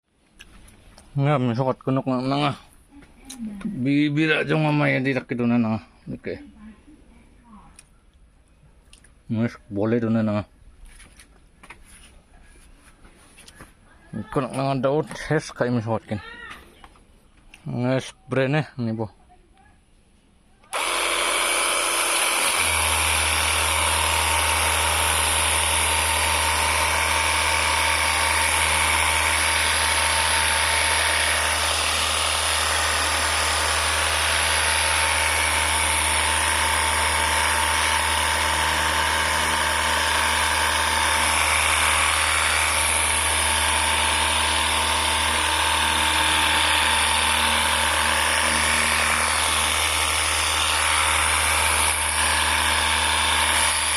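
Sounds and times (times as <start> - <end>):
pressure washer motor humming: 20.7 - 53.9.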